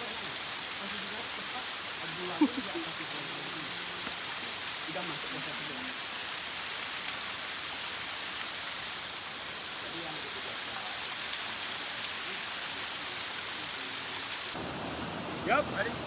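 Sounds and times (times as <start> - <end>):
faint voices: 0.0 - 6.0
waterfall rushing: 0.0 - 16.0.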